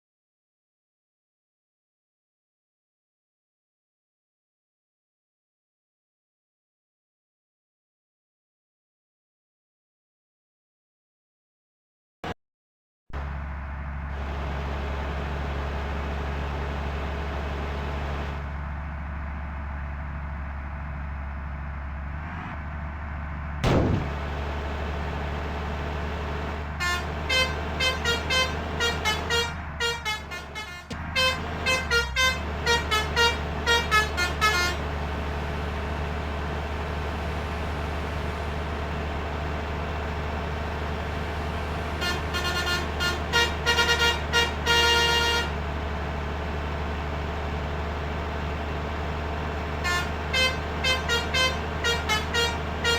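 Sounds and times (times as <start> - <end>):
low engine hum: 13.1 - 52.9
bus multi-tone horn beeping: 14.1 - 21.5, 25.6 - 46.8, 49.0 - 52.9.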